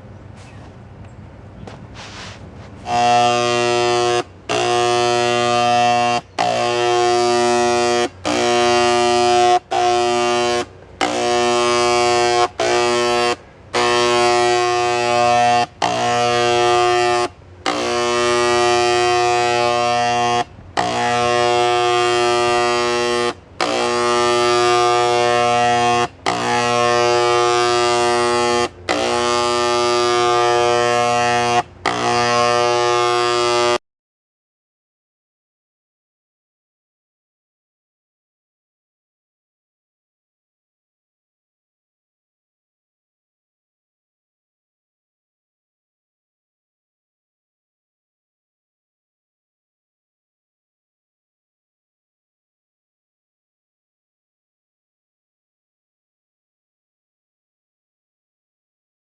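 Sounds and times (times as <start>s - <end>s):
paint sprayer pump buzzing: 0.0s - 33.8s.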